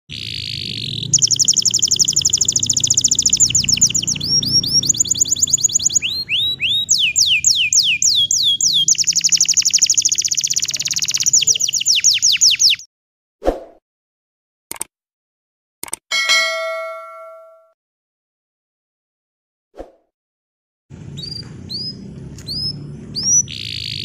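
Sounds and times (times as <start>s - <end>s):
canary singing trills: 0.1s - 12.9s, 21.0s - 24.0s.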